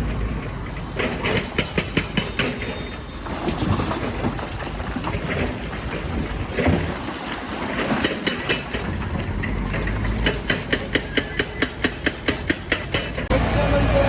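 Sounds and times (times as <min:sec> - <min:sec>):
low engine rumble: 0:02.7 - 0:12.3
rapid sharp knocks: 0:09.9 - 0:13.3.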